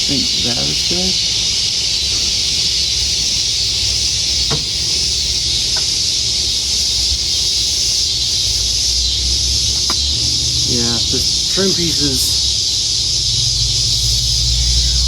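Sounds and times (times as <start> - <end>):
insects chorus drone: 0.0 - 15.0
faint ticks: 9.7 - 10.2.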